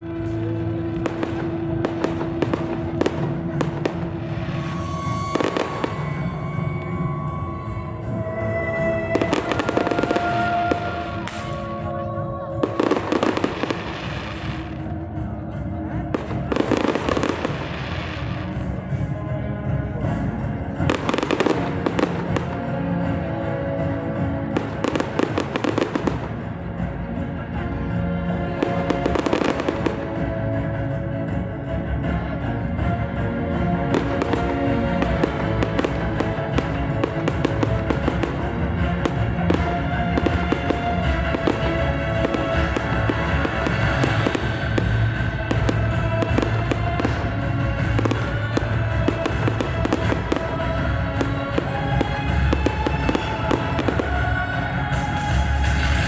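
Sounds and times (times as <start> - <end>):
fireworks bangs: 0.0 - 11.9, 16.1 - 18.6, 33.9 - 56.0
music playing: 0.0 - 56.0.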